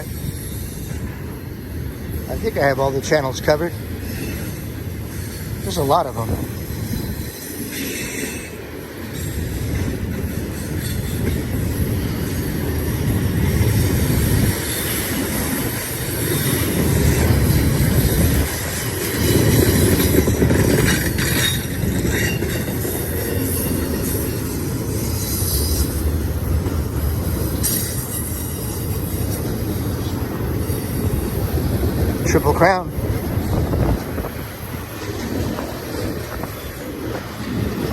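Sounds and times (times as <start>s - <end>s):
train wheels rumbling on rail: 0.0s - 37.9s
high wheel squeal: 21.1s - 26.2s.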